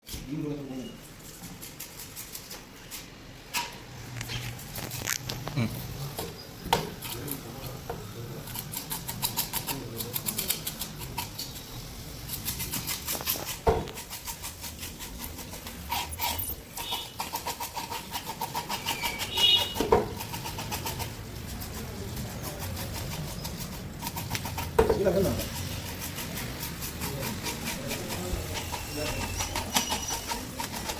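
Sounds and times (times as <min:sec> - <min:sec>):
knife scraping fish: 0:01.1 - 0:03.2, 0:08.5 - 0:30.9.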